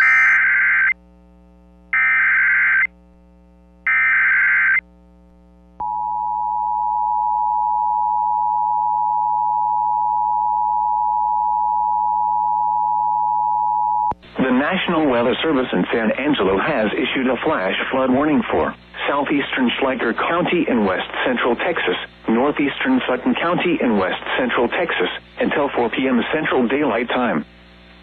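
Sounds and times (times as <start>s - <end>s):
two-tone attention signal: 0.0s - 0.6s
data bursts: 0.0s - 0.9s.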